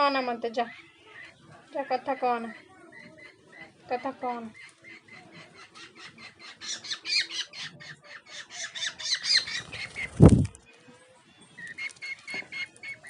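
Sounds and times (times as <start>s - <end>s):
parrot squawking: 4.6s - 9.6s.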